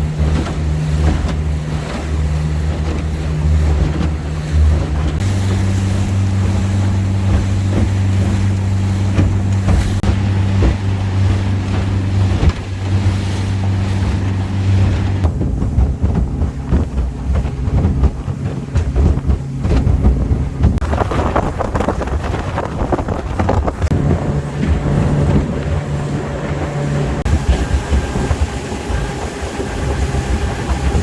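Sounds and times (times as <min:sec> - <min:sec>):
low engine rumble: 0:00.0 - 0:31.0
wind buffeting microphone: 0:00.0 - 0:31.0.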